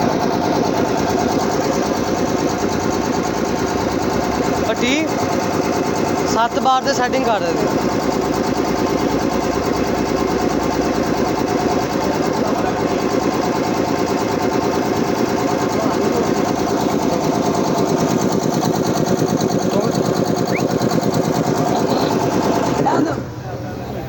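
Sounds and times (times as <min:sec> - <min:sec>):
air compressor running: 0:00.0 - 0:24.0.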